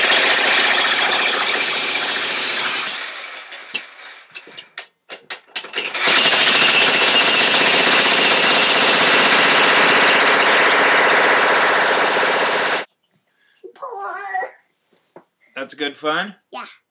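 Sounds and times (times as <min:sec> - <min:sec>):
jackhammer hammering: 0:00.0 - 0:12.9.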